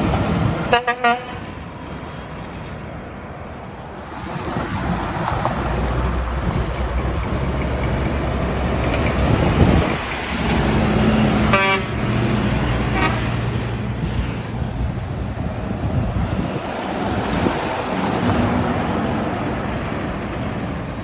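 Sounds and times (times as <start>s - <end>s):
heavy truck engine passing: 0.0s - 21.0s
truck horn blasts: 0.6s - 1.6s, 11.4s - 12.1s, 12.8s - 13.4s.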